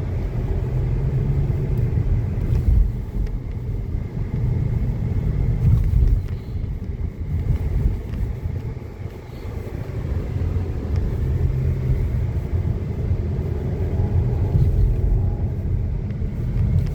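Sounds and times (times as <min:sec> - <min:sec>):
wind buffeting microphone: 0:01.9 - 0:16.9.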